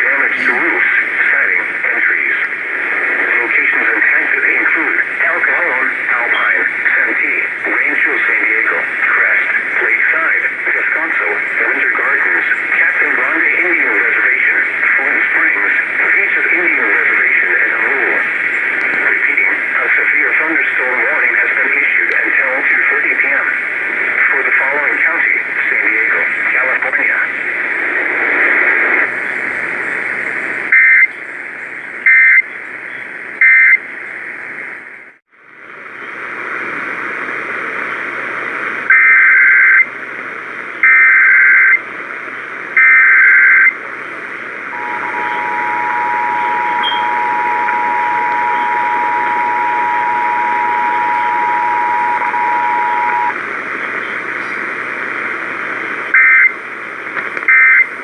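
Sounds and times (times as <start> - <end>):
radio static hiss: 0.0 - 58.0
emergency alert data bursts: 30.7 - 31.1, 32.0 - 32.5, 33.4 - 33.8, 38.9 - 39.8, 40.8 - 41.8, 42.8 - 43.7, 44.7 - 53.4, 56.1 - 56.6, 57.5 - 58.0
two-tone attention signal: 44.8 - 53.4.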